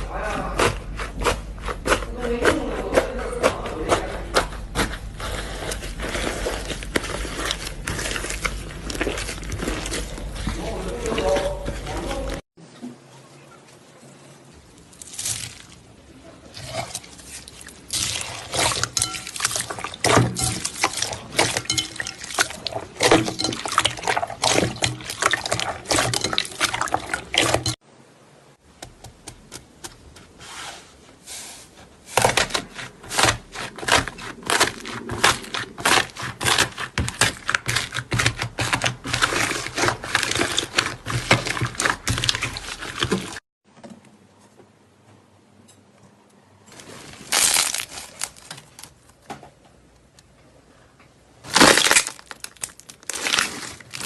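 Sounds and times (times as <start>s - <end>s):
slime squelching by hand: 0.0s - 12.4s, 14.8s - 27.8s, 32.0s - 43.4s, 46.8s - 49.2s, 51.4s - 54.0s.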